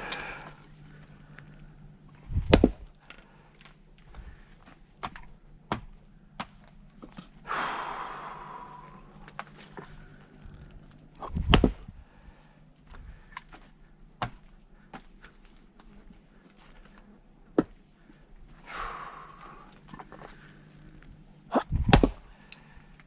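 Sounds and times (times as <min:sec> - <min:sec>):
axe chopping wood: 0:02.3 - 0:02.9, 0:05.0 - 0:06.6, 0:11.3 - 0:11.9, 0:14.2 - 0:15.0, 0:21.7 - 0:22.2
knocks of wood being handled: 0:02.3 - 0:07.3, 0:10.8 - 0:11.9, 0:12.8 - 0:17.8, 0:21.8 - 0:22.3.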